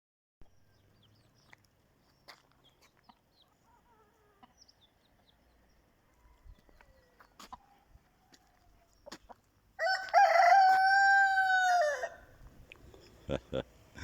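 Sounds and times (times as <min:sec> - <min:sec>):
chickens clucking: 0:02.3 - 0:05.5, 0:06.6 - 0:09.6.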